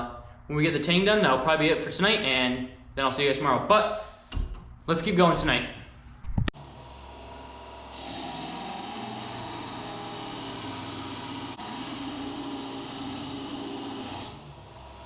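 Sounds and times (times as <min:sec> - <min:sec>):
electric grinder grinding steel: 0:06.6 - 0:15.0.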